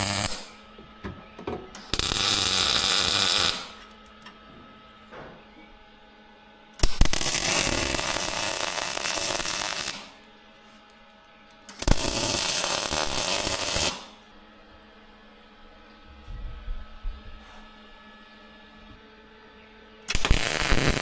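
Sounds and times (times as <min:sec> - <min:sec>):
welding arc crackling: 0:00.0 - 0:00.6, 0:01.7 - 0:03.8, 0:06.8 - 0:10.2, 0:11.7 - 0:14.2, 0:20.1 - 0:21.0.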